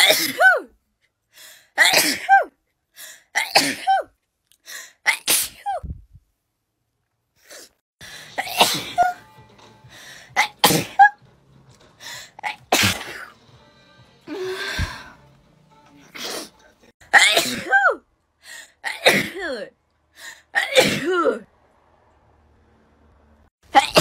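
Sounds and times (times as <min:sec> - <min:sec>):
person sneezing: 0:08.4 - 0:09.2, 0:12.4 - 0:13.3, 0:16.1 - 0:16.5.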